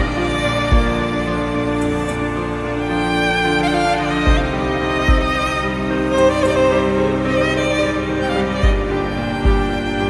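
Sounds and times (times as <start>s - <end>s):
low thumps: 0.0s - 3.3s
sad string music: 0.0s - 10.0s.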